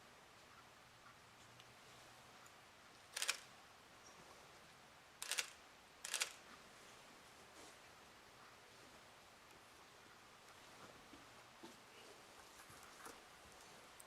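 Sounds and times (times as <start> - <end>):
sharp clicking crunches: 3.2 - 3.4.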